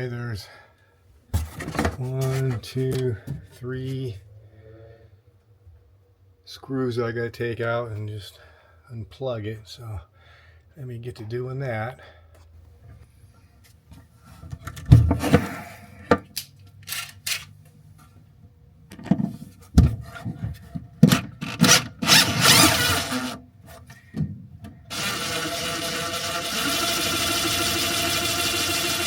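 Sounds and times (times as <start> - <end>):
tools knocking and clattering: 18.9 - 21.9
cordless drill motor running: 21.4 - 23.4, 24.9 - 29.0.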